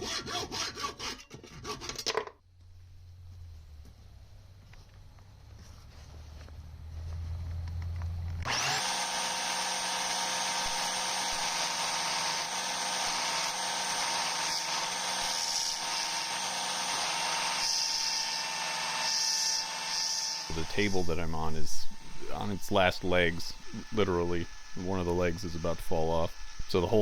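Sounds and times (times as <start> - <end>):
belt sander motor hum: 7.5 - 27.0
belt sander sanding with whine: 8.4 - 27.0.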